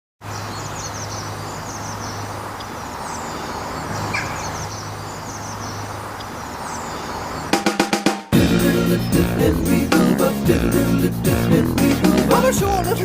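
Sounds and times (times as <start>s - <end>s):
small birds chirping: 0.2s - 7.8s.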